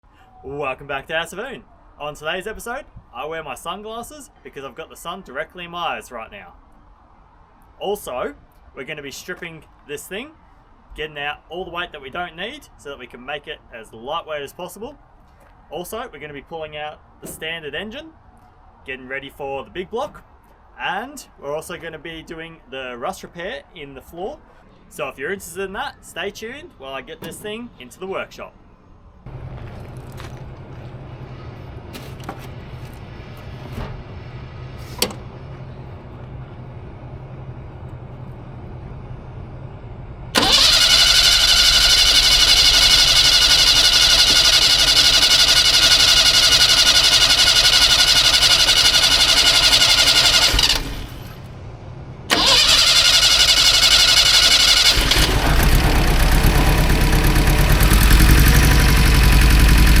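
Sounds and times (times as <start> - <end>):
car engine running: 40.3 - 60.0
car starter motor cranking: 40.4 - 51.5, 52.3 - 60.0.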